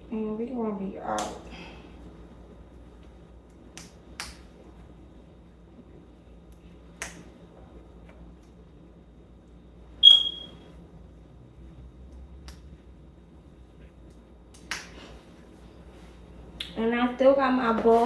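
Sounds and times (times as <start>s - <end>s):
brief high ring: 10.0s - 10.6s.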